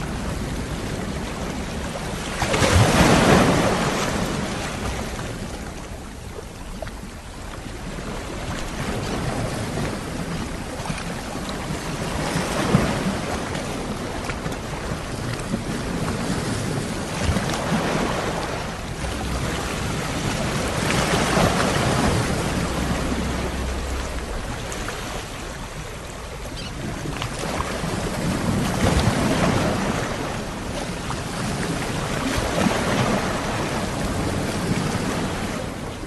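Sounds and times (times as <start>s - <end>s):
sea waves washing onto shore: 0.0s - 36.0s.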